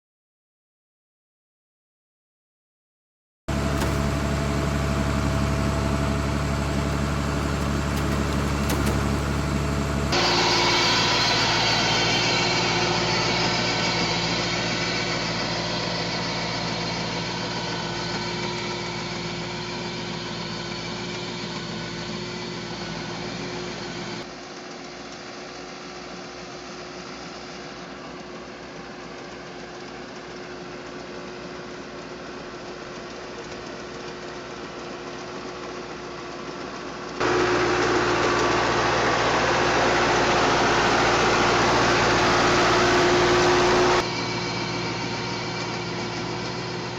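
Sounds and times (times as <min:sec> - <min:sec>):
farm machine engine running: 0:03.5 - 0:24.2, 0:37.2 - 0:46.9.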